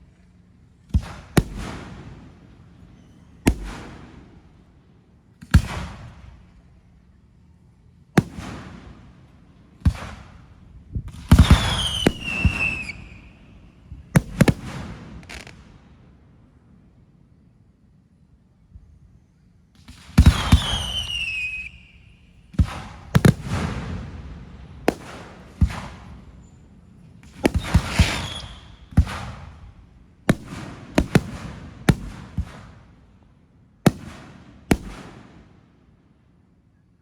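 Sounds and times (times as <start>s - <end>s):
fireworks bangs: 1.0s - 2.3s, 3.0s - 4.4s, 11.0s - 15.7s, 19.8s - 21.8s, 22.5s - 33.0s, 33.9s - 35.5s
falling firework whistle: 11.3s - 13.8s, 19.9s - 23.7s, 27.4s - 29.4s.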